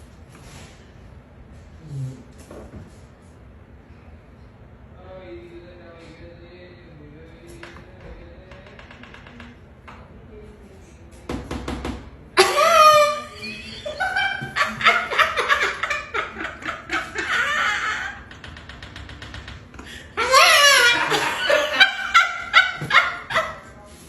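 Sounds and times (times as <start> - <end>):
high-pitched shriek of laughter: 12.4 - 16.1, 20.2 - 23.3
people laughing hard: 12.4 - 18.9, 19.7 - 23.8.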